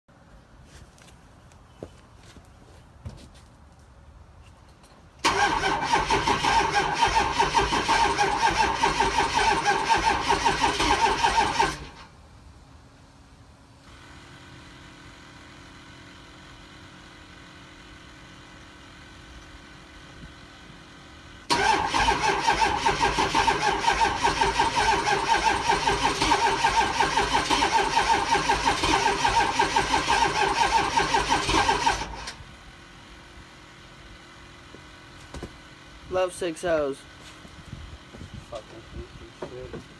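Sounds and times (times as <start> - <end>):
diesel engine cranking: 5.2 - 12.2, 21.4 - 32.9.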